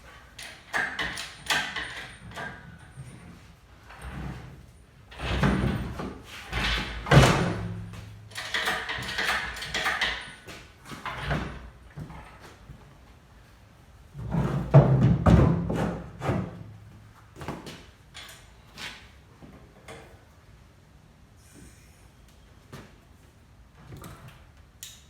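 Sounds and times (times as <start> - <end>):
metal chain clanking and scraping: 0.4 - 12.4.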